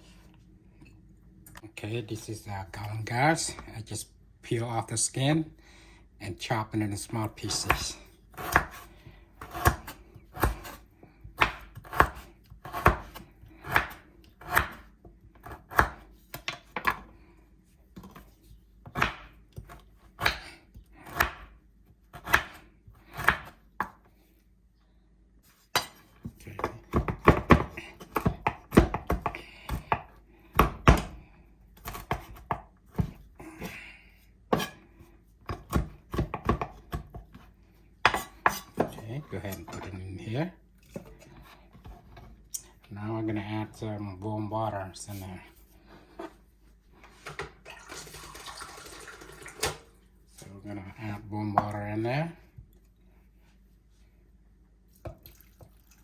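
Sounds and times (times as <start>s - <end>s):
knife chopping root: 7.5s - 17.0s, 18.8s - 21.6s, 22.2s - 24.0s, 25.7s - 31.2s, 35.4s - 37.2s.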